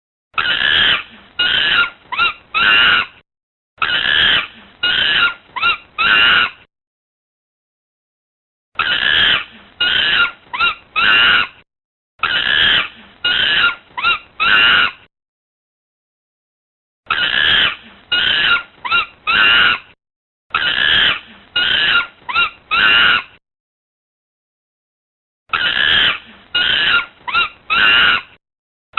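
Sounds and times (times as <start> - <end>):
monkey screeching: 0.4 - 3.2, 3.8 - 6.7, 8.8 - 11.6, 12.2 - 15.1, 17.1 - 23.4, 25.5 - 28.4.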